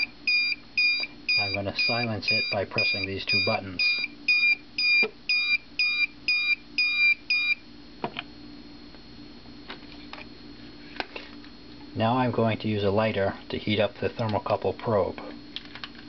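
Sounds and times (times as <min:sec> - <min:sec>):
rapid electronic alarm beeps: 0:00.0 - 0:07.6
faint hum: 0:00.0 - 0:16.0.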